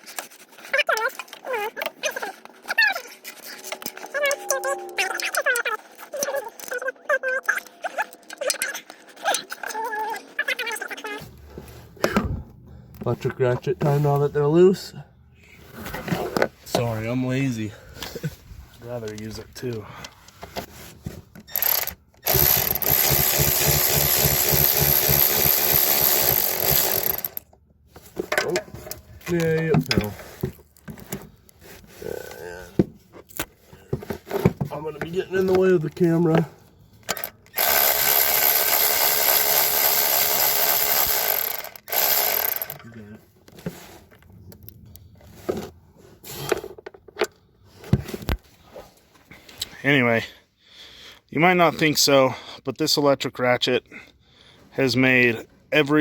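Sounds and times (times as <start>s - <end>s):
electric ratchet spinning: 21.5s - 27.5s, 37.1s - 42.9s.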